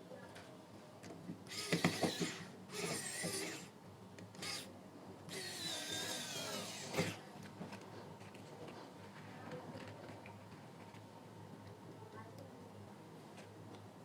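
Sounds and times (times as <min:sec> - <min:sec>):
electric screwdriver whining: 0:01.5 - 0:03.7, 0:04.4 - 0:04.7, 0:05.3 - 0:07.2.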